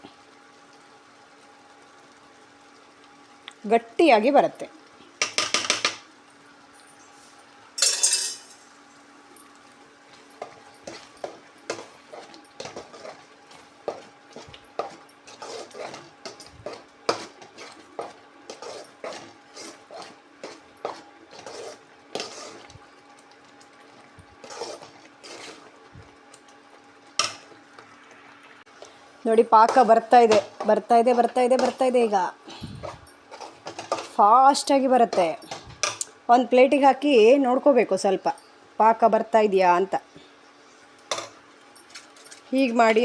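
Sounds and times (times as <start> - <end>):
spoon scraping a pan: 7.8 - 8.6, 10.4 - 22.8, 24.4 - 25.7, 29.6 - 32.0, 32.8 - 34.2, 35.0 - 36.0.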